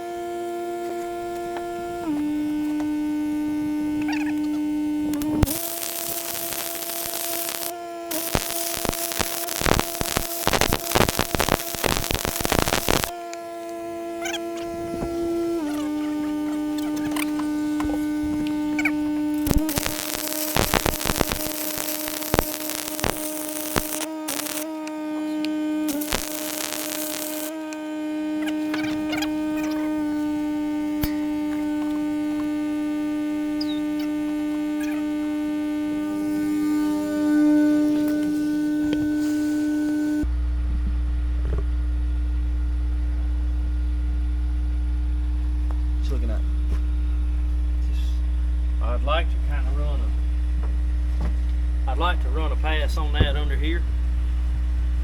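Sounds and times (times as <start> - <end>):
electrical hum: 0.0 - 55.0
welding arc crackling: 2.0 - 40.3.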